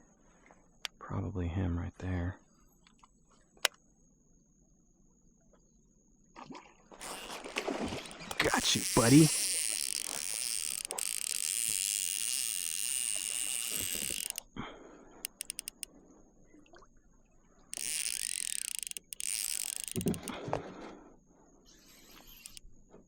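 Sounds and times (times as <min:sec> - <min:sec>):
fishing reel whirring: 0:07.0 - 0:14.5, 0:15.2 - 0:15.9, 0:17.7 - 0:20.4, 0:21.7 - 0:22.7.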